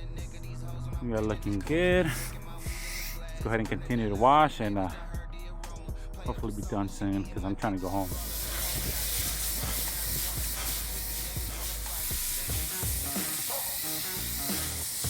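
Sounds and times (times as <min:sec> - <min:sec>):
background music: 0:00.0 - 0:15.0
water spraying from hose nozzle: 0:02.0 - 0:03.3, 0:07.8 - 0:15.0.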